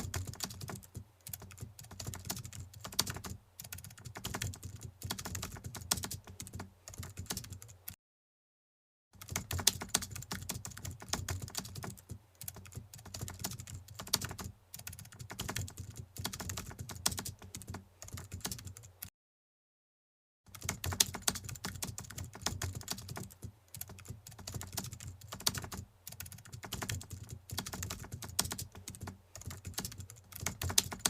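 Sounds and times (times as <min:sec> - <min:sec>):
computer keyboard typing: 0:00.0 - 0:08.0, 0:09.2 - 0:19.1, 0:20.5 - 0:31.0.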